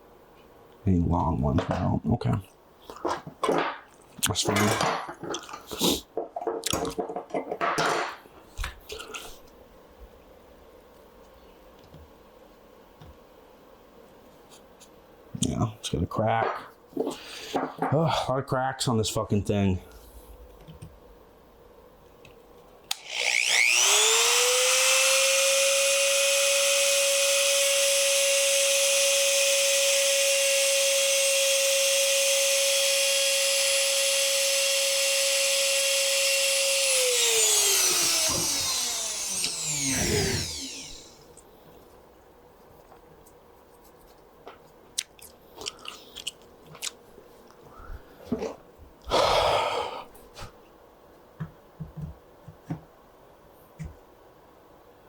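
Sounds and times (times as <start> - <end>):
power tool motor whining: 22.9 - 41.3.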